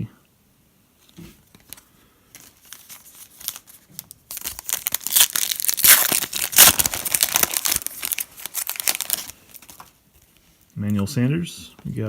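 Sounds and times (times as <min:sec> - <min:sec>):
plastic wrapper tearing and crinkling: 0:01.5 - 0:10.0.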